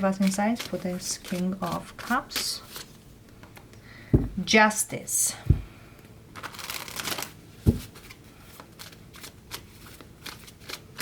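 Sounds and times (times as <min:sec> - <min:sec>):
thump: 0:04.1 - 0:04.4
cards rustling: 0:06.4 - 0:11.0.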